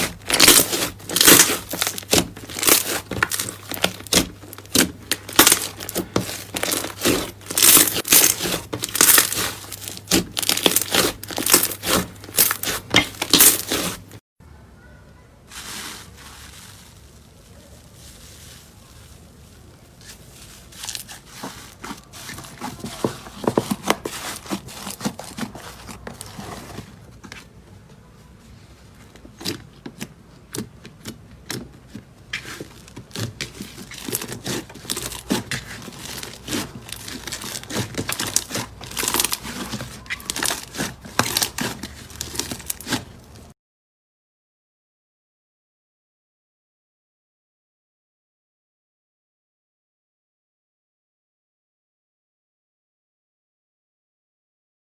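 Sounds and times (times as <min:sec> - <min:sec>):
slime crackling and popping: 0:00.0 - 0:14.2, 0:33.1 - 0:43.4
slime squished by hand: 0:00.0 - 0:14.2, 0:32.4 - 0:43.4.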